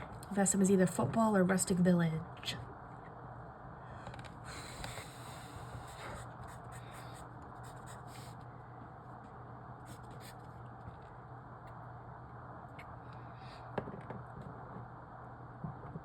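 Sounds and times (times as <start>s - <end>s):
steady low hum: 0.0s - 16.0s
pen scratching on paper: 5.9s - 8.4s.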